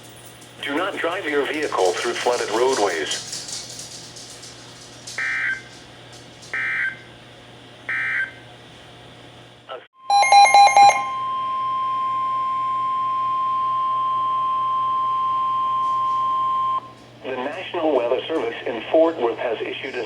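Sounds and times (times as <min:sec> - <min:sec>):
steady warning alarm tone: 0:05.2 - 0:05.7, 0:06.5 - 0:07.1, 0:07.9 - 0:08.4, 0:10.0 - 0:16.9.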